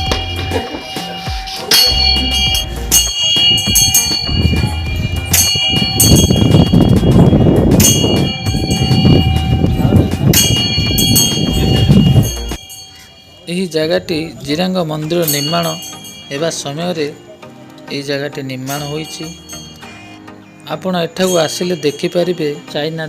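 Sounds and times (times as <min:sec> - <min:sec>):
steady bass line: 0:00.0 - 0:12.6
bell-like chimes ringing: 0:00.0 - 0:23.0.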